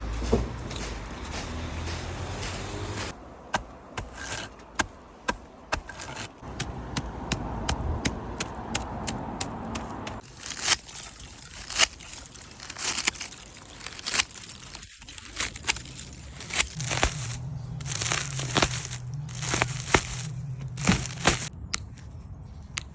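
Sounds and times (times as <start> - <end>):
rustling scraping through thatch: 0.0 - 3.2, 10.2 - 21.5.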